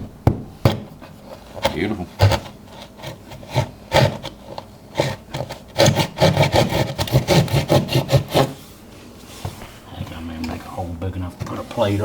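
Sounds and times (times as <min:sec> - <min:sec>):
hand saw rasping: 0:05.0 - 0:08.6.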